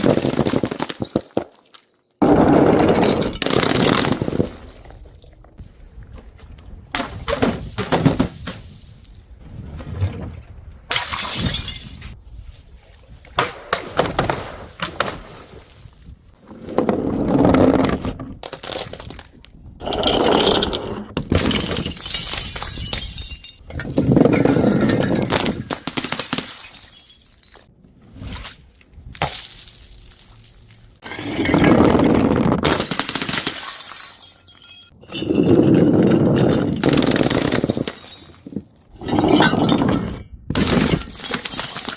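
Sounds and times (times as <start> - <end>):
glass bottles shattering: 10.9 - 12.2, 21.3 - 27.7, 32.7 - 39.9, 40.6 - 41.9
glass crunching and splintering: 21.4 - 23.6, 24.4 - 27.7, 32.7 - 35.5.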